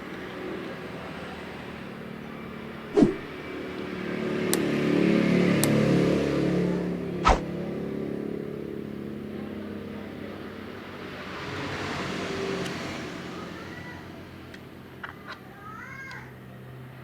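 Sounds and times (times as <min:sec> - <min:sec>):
traffic noise: 0:00.0 - 0:17.0
vehicle engine passing: 0:03.0 - 0:09.9
sharp click: 0:07.2 - 0:07.4.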